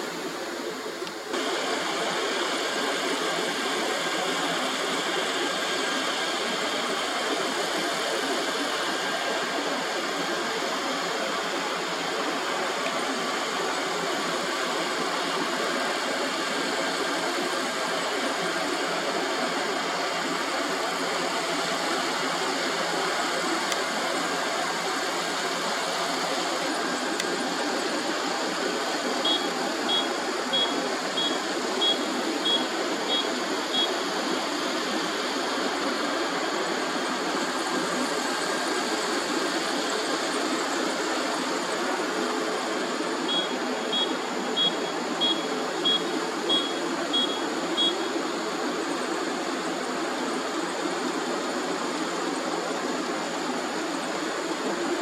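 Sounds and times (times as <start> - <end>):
combine harvester running: 0.1 - 48.2
high beeps: 29.2 - 33.2, 43.3 - 48.0.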